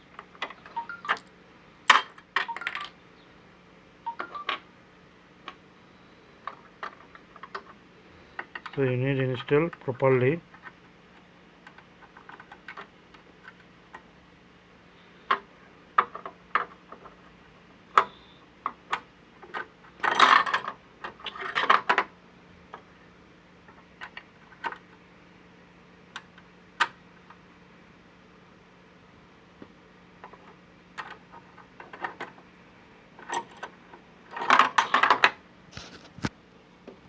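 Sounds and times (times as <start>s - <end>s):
faint steady hum: 0.0s - 37.0s
metal parts rattling and clinking: 19.5s - 20.7s, 34.3s - 35.3s.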